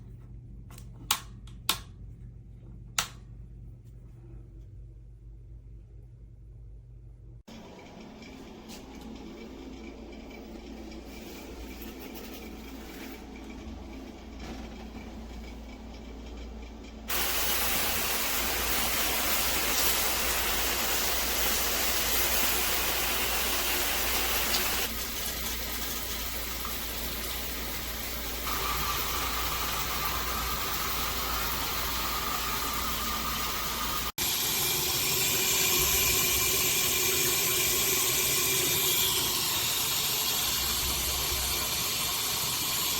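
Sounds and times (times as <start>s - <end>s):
water spraying from shower head: 17.1s - 42.9s.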